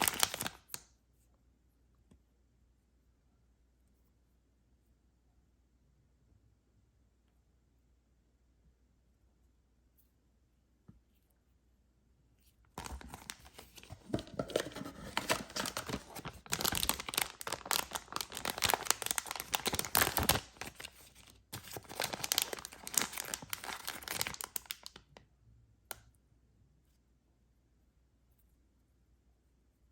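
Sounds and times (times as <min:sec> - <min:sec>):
candy wrapper crinkling: 0:00.0 - 0:00.8, 0:12.8 - 0:25.2.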